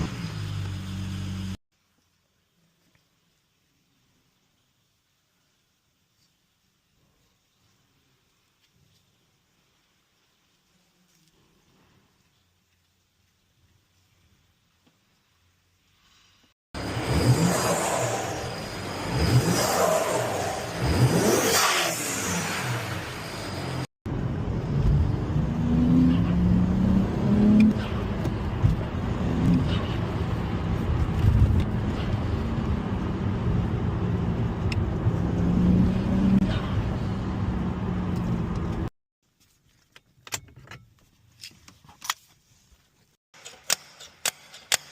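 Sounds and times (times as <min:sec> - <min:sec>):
road rumble: 0:00.0 - 0:01.6, 0:12.6 - 0:38.9
car engine accelerating: 0:16.8 - 0:38.9.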